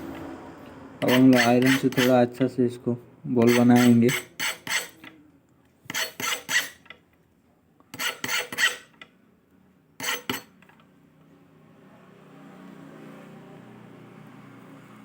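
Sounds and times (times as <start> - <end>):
soldering iron scraping: 1.0 - 2.2, 3.4 - 5.1, 5.9 - 6.9, 8.0 - 8.9, 10.0 - 10.5.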